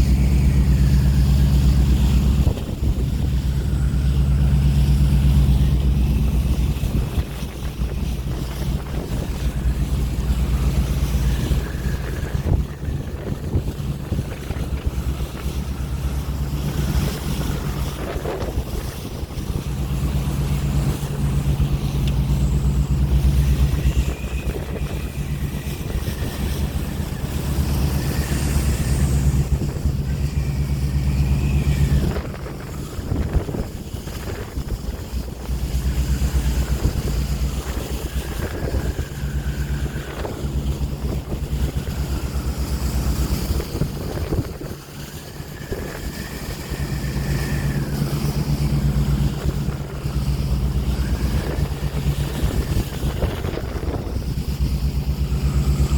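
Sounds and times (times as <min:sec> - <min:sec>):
ocean waves: 0:00.0 - 0:55.9
wind buffeting microphone: 0:00.0 - 0:55.9
thin whistling tone: 0:03.1 - 0:04.7, 0:22.2 - 0:33.1.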